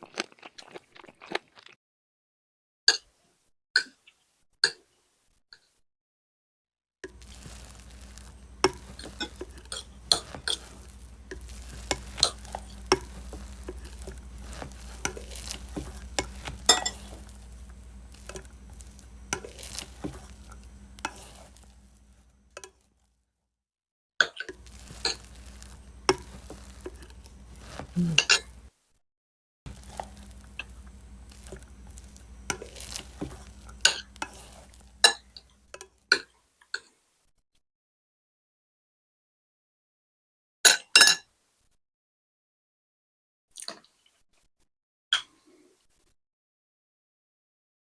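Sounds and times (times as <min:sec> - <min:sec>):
chewing with clicks and smacks: 0:00.0 - 0:01.8.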